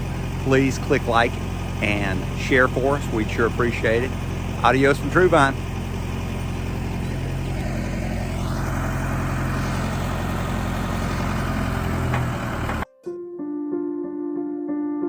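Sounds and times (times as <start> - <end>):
diesel engine running: 0.0 - 12.8
soft piano music: 12.8 - 15.0.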